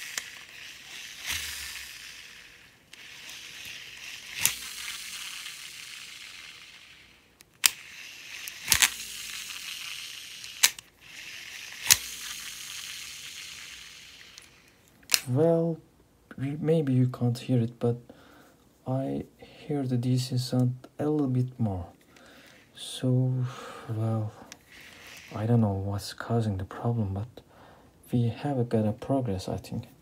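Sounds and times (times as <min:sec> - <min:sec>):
fishing reel spool whirring: 0:00.0 - 0:15.2, 0:24.6 - 0:25.6
reel clicks: 0:00.0 - 0:15.3.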